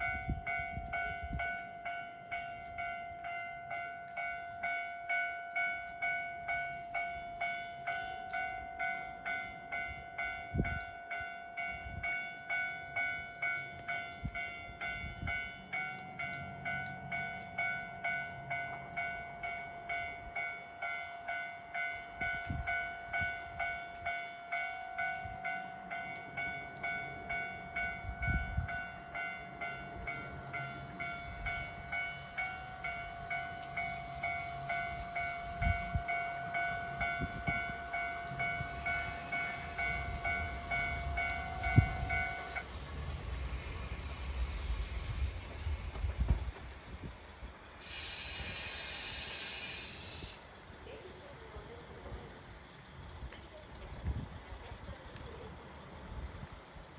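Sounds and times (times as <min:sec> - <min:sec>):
level crossing warning bell: 0:00.0 - 0:43.8
high-pitched tone: 0:27.6 - 0:43.5.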